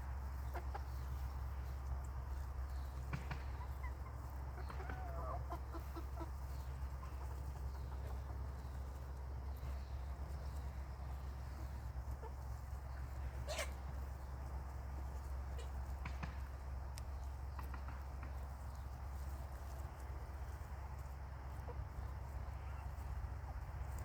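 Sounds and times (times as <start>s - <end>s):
chickens clucking: 0.0s - 24.0s
chicken call: 3.8s - 6.3s, 13.4s - 13.8s.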